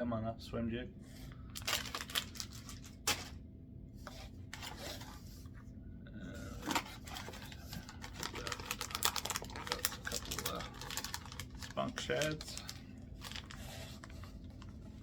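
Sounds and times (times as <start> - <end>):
plastic packages crinkling: 1.5 - 3.4, 6.6 - 15.0.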